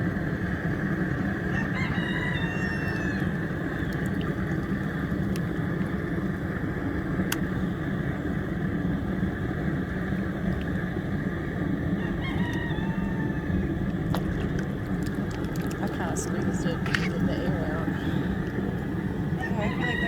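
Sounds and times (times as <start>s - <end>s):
rooster crowing: 1.5s - 3.4s, 12.0s - 13.8s, 19.4s - 20.0s.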